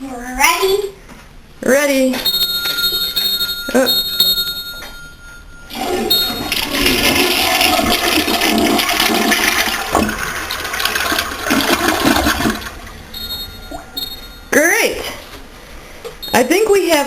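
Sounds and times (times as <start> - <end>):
toilet flushing: 5.7 - 13.1.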